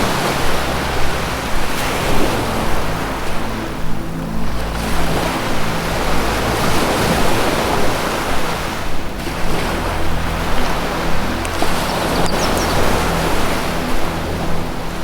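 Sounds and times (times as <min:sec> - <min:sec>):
low synth drone: 0:00.0 - 0:15.0
ocean surf washing: 0:00.0 - 0:15.0.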